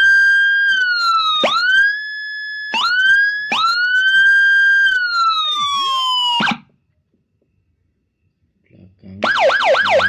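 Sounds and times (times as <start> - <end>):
electronic siren whooping: 0.0 - 6.7, 9.2 - 10.0.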